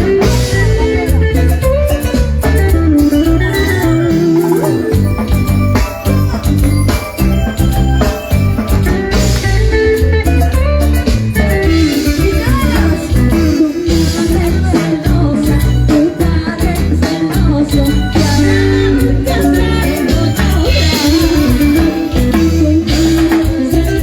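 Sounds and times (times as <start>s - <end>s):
heavy bass beat: 0.0s - 15.8s
percussion: 0.0s - 24.0s
plucked guitar: 0.0s - 24.0s
person singing: 11.3s - 24.0s.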